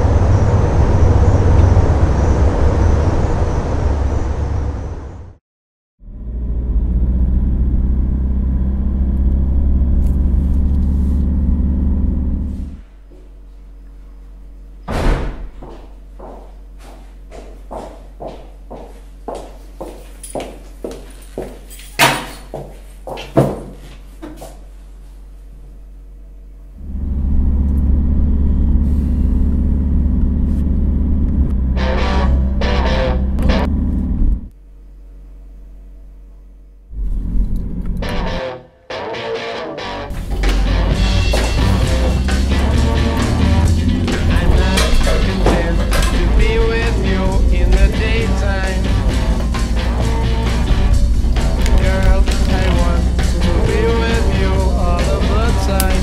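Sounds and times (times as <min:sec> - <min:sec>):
low vehicle-like rumble: 0:00.0 - 0:05.4, 0:06.0 - 0:13.7, 0:26.6 - 0:34.5, 0:36.9 - 0:38.4, 0:40.1 - 0:56.0
faint hum: 0:06.0 - 0:21.9, 0:23.9 - 0:38.4, 0:40.1 - 0:56.0
sharp bang: 0:14.9 - 0:15.6.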